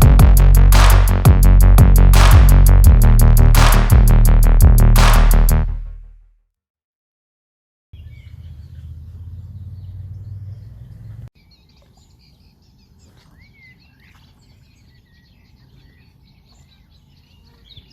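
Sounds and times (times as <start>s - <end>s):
loud low rumble: 0.0s - 6.1s
birds chirping: 8.0s - 17.9s.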